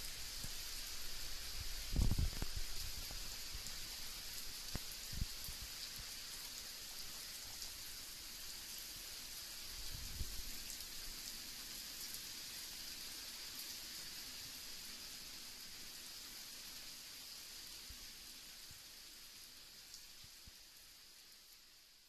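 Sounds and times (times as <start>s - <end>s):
heavy rain hissing: 0.0s - 21.8s.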